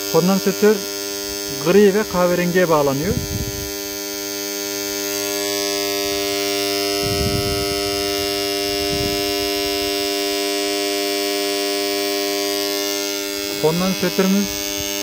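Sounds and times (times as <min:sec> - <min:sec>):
contactor buzzing loudly: 0:00.0 - 0:15.0.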